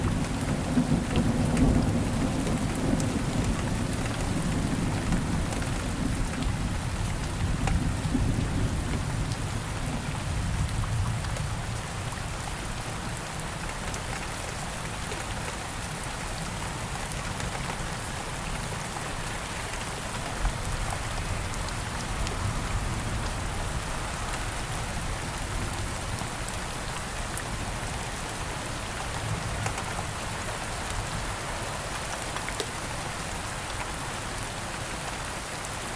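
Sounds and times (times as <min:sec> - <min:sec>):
rain falling steadily: 0:00.0 - 0:35.9
low rumble of thunder: 0:00.1 - 0:12.5.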